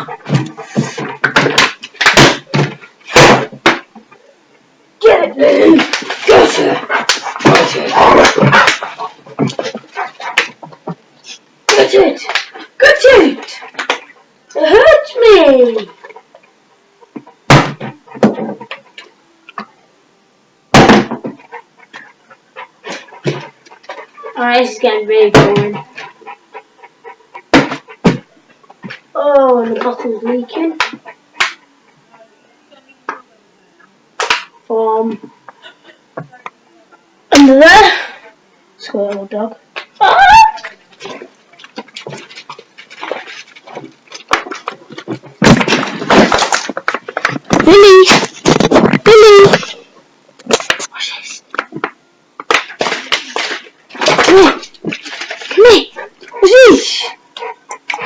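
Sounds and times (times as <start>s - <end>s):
dog panting: 0.0s - 1.3s, 8.4s - 10.9s, 21.3s - 24.5s, 25.7s - 29.0s, 29.8s - 32.2s, 55.1s - 58.0s.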